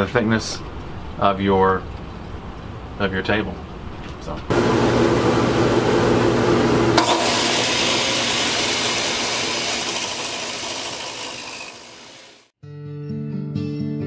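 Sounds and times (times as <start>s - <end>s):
power tool motor humming: 7.0s - 12.5s
tool spinning down whoosh: 7.0s - 12.5s.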